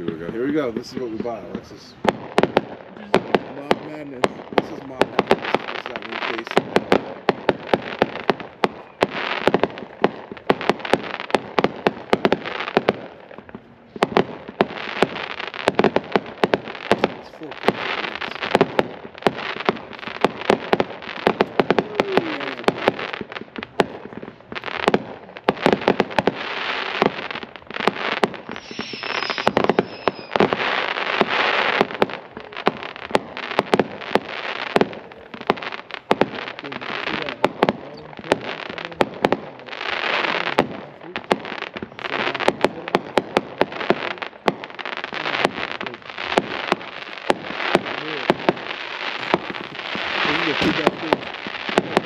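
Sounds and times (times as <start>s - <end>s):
fireworks cake firing shots: 0.0s - 52.0s
fireworks crackling: 0.0s - 52.0s
falling whistle: 28.5s - 30.4s.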